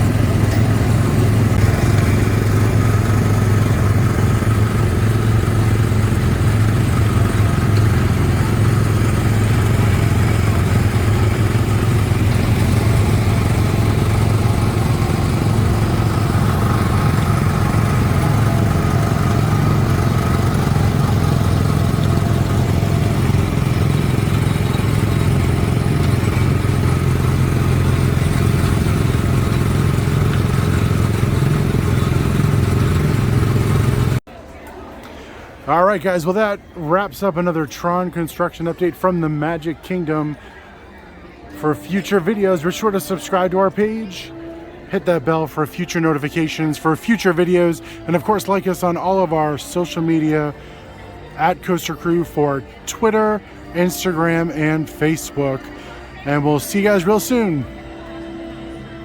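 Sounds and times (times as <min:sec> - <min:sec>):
low engine-like drone: 0:00.0 - 0:34.2, 0:39.5 - 0:59.0.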